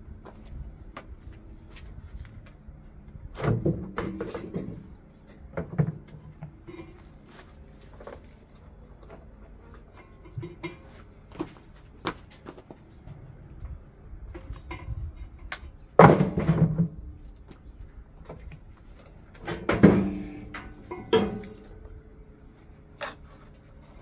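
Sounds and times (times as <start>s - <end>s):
washing machine parts clattering: 19.4s - 21.8s.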